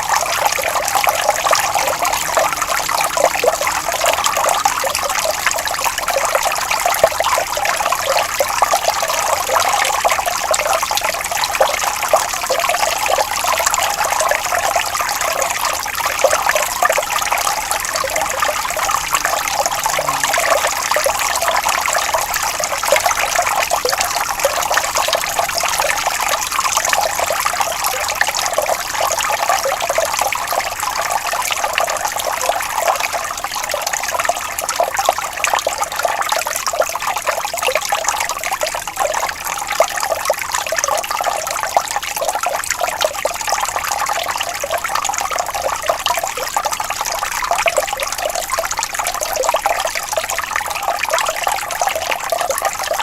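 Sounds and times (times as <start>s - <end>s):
stream babbling: 0.0s - 36.1s.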